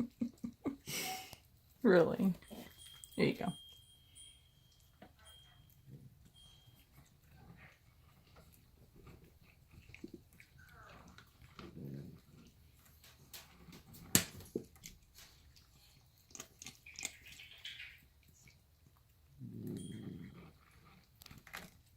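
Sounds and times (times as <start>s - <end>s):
cat chewing: 5.7s - 21.9s
cat growling low: 9.9s - 12.8s, 19.3s - 21.1s.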